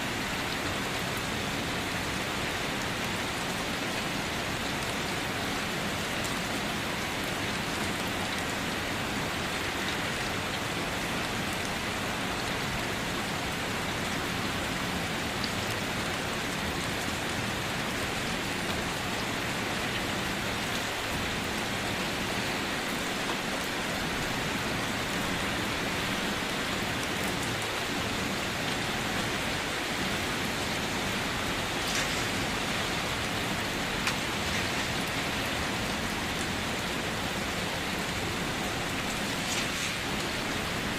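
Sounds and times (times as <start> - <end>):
rain on a hard surface: 0.0 - 40.9.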